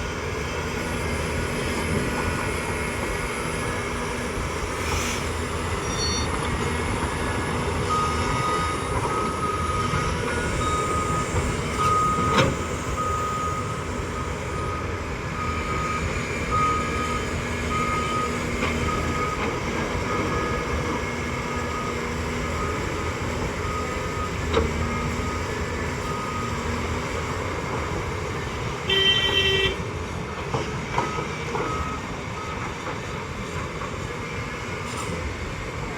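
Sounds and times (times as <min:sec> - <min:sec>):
excavator diesel engine running: 0:00.0 - 0:35.9
reversing alarm beeping: 0:05.6 - 0:27.6, 0:28.9 - 0:29.8, 0:30.9 - 0:32.9
short horn toot: 0:28.9 - 0:29.8.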